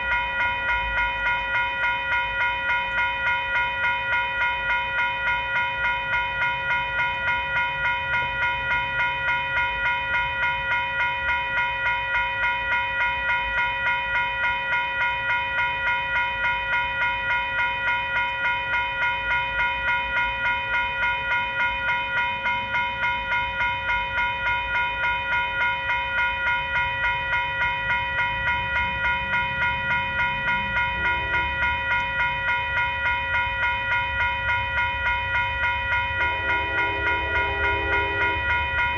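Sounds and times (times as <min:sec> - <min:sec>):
train rumble: 0:25.2 - 0:38.9
locomotive air horn blast: 0:30.8 - 0:32.0, 0:36.2 - 0:38.9.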